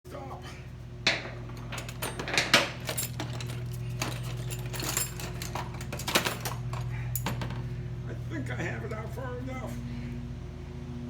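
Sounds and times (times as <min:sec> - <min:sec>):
steady low hum: 0:00.1 - 0:11.0
metal bolts clinking: 0:01.0 - 0:07.7.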